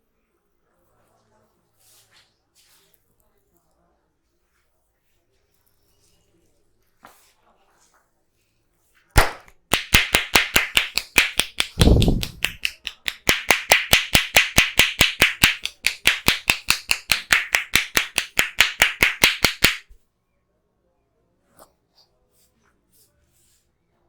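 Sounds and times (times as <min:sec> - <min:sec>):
hands slapping head: 0:09.2 - 0:20.0.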